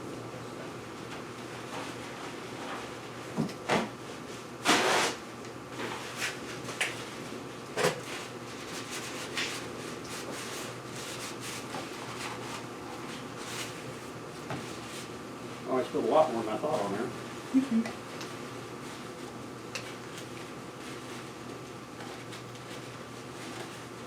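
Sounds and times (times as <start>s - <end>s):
paper towel rustle: 8.1s - 15.1s, 19.9s - 24.0s.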